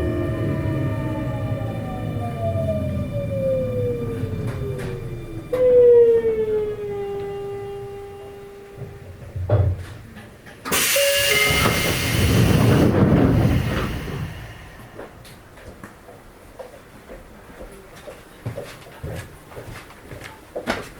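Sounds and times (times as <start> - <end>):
low rumble: 0.0 - 6.8, 12.2 - 15.6
train inverter whine: 0.0 - 9.4, 10.6 - 16.2.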